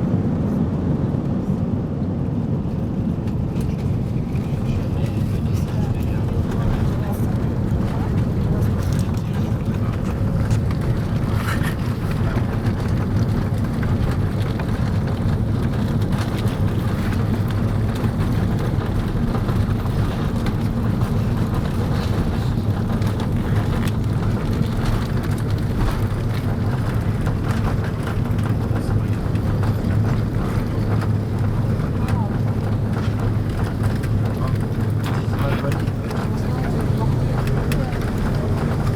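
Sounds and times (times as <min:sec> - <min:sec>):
low rumble of jet engines: 0:00.0 - 0:38.9.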